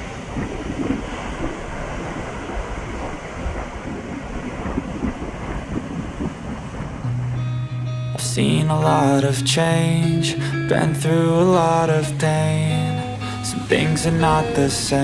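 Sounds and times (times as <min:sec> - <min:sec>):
surf breaking on shore: 0:00.0 - 0:07.6
wind buffeting microphone: 0:00.0 - 0:09.9.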